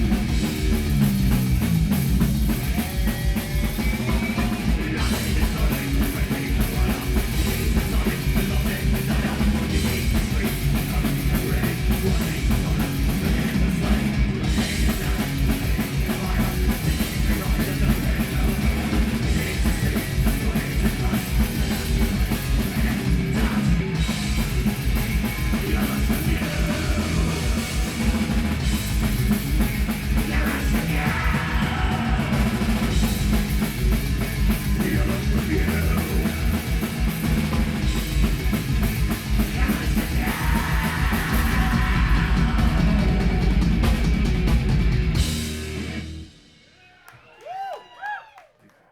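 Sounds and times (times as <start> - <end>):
heavy metal band playing: 0.0 - 46.7.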